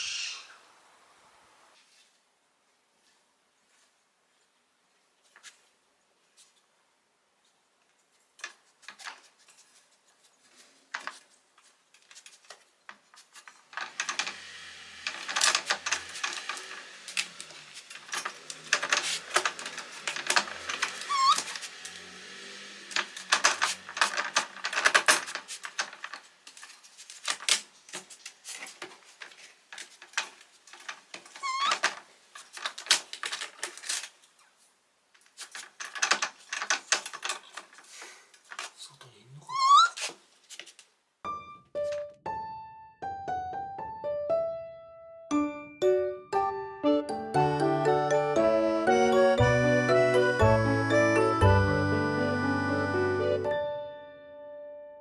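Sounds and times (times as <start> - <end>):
high squeaks: 0.0 - 0.6, 15.0 - 25.8, 31.3 - 32.0, 38.8 - 40.2
scratching and clicking: 10.9 - 34.5.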